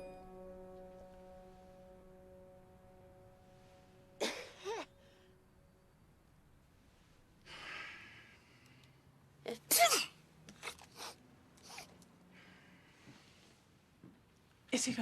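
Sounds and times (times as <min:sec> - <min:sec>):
high-pitched sneeze: 0:09.5 - 0:11.9.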